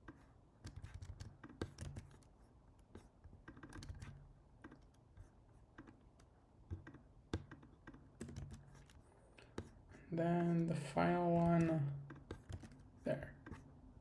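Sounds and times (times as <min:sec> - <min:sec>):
computer keyboard typing: 0:00.6 - 0:02.3, 0:03.0 - 0:05.0, 0:06.7 - 0:09.8, 0:10.5 - 0:13.6.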